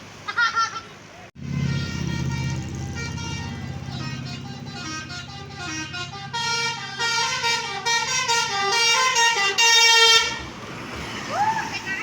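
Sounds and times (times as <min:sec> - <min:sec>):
bus engine rumbling: 0:00.0 - 0:12.0
bus horn playing melody: 0:01.4 - 0:10.5.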